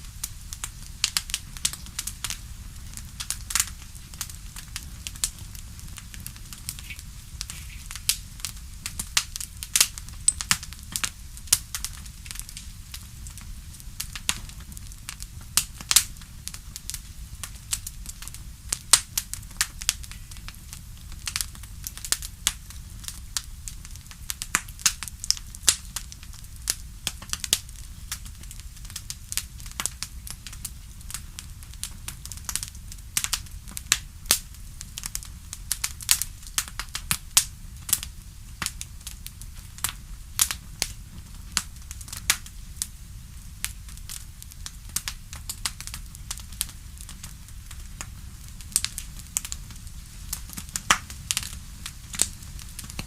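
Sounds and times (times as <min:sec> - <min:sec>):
bonfire crackling: 0:00.0 - 0:53.0
low fire rumble: 0:00.0 - 0:53.0.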